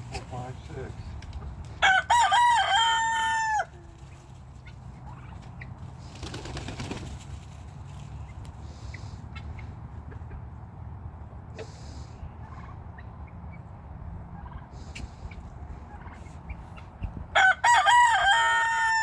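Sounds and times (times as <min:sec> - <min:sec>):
faint farmyard background: 0:00.0 - 0:19.0
rooster crowing: 0:01.8 - 0:03.8, 0:17.3 - 0:19.0.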